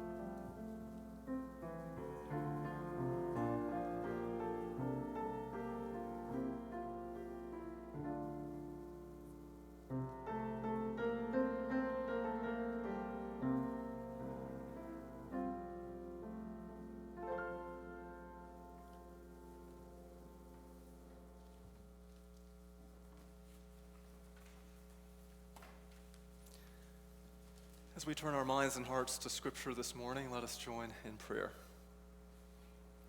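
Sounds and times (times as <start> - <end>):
slow piano chords: 0.0 - 23.4.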